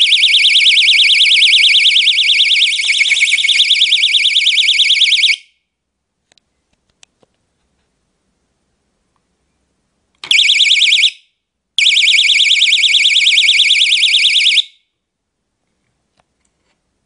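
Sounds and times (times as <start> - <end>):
alarm siren warbling: 0.0 - 5.4.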